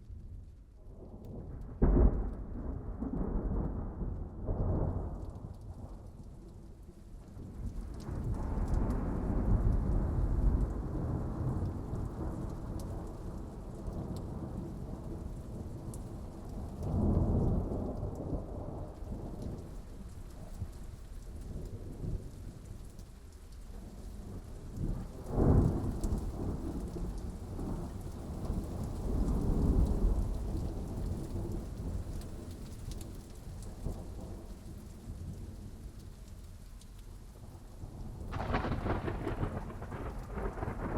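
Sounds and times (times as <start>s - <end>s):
steady rain: 0.0s - 40.9s
thunder rumbling: 0.3s - 6.5s, 7.2s - 19.8s, 37.8s - 40.9s
sharp thunder crack: 38.3s - 40.9s.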